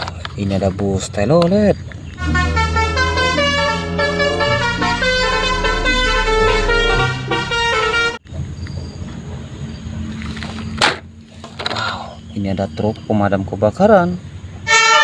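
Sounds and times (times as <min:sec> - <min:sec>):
steady hum: 0:02.1 - 0:08.2
multi-tone bus horn tune: 0:02.2 - 0:08.2, 0:14.6 - 0:15.0.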